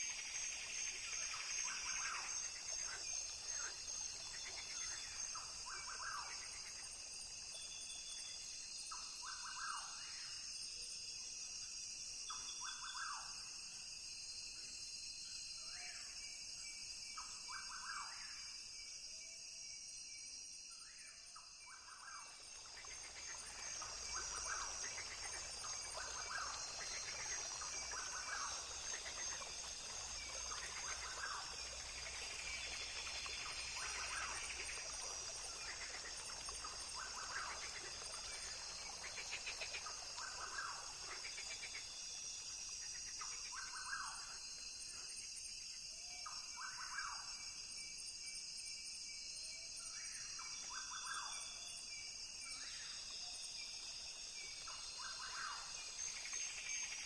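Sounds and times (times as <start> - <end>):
high-pitched insect drone: 21.4 - 57.0.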